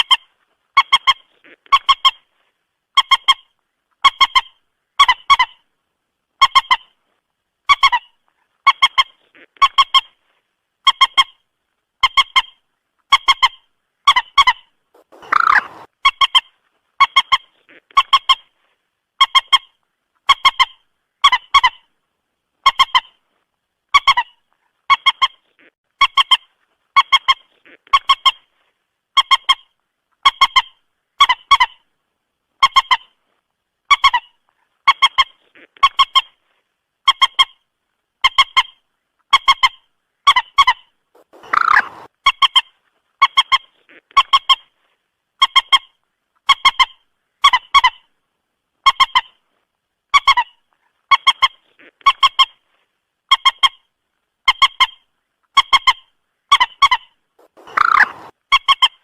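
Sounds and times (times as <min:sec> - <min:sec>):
moorhen stuttering call: 0:12.0 - 0:18.6, 0:38.2 - 0:44.7, 0:55.6 - 0:59.0.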